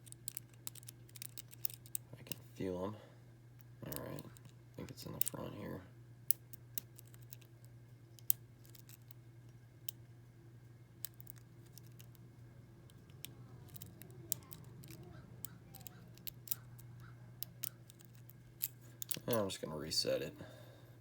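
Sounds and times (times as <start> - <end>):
steady low hum: 0.0 - 21.0
lock pick clicking in padlock: 0.1 - 2.0, 12.9 - 19.3.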